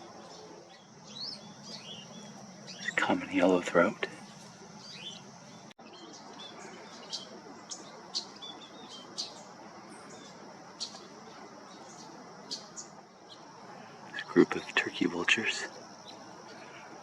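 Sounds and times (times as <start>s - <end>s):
faint outdoor hiss: 0.0s - 17.0s
songbird chip calls: 0.0s - 17.0s.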